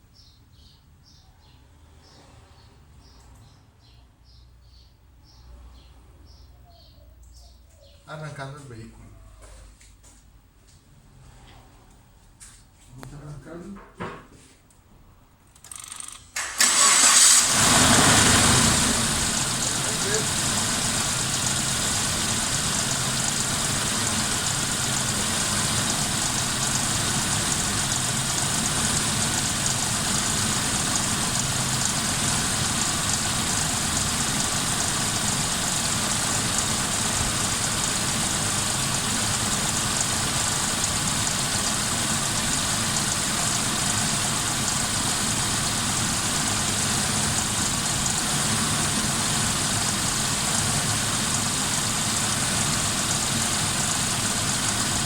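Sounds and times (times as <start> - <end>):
misfiring car engine idling: 16.6 - 55.0.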